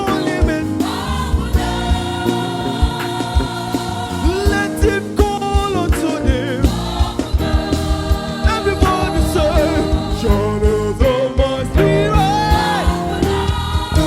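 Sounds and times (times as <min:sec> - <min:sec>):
choir singing: 0:00.0 - 0:05.3, 0:06.1 - 0:14.0
steady drum beat: 0:00.0 - 0:14.0
sustained keyboard chords: 0:00.0 - 0:14.0.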